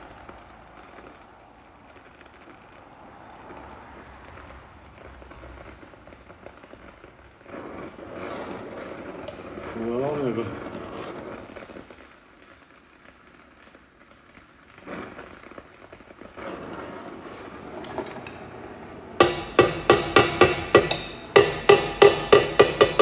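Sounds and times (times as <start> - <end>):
hammer striking metal pipe: 19.2 - 23.0.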